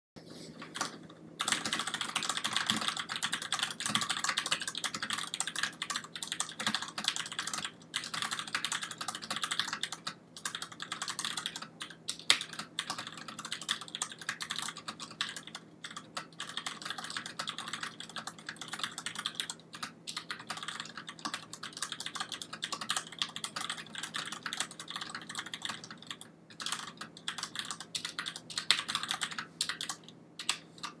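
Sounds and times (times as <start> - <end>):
mechanical keyboard typing: 0.8 - 31.0.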